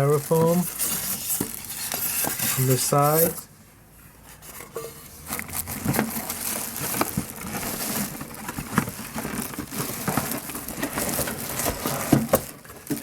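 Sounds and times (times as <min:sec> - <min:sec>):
styrofoam rustling and scraping: 0:00.0 - 0:03.5, 0:04.2 - 0:13.0.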